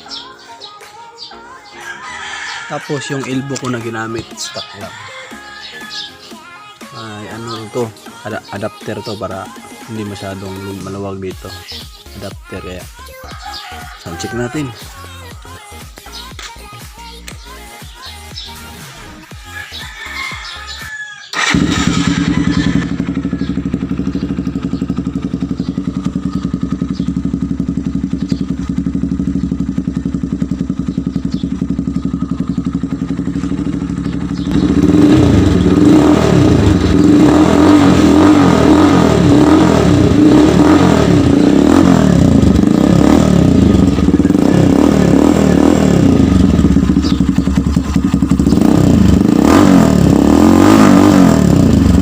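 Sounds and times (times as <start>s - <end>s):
motorcycle engine idling and revving: 5.8s - 52.0s.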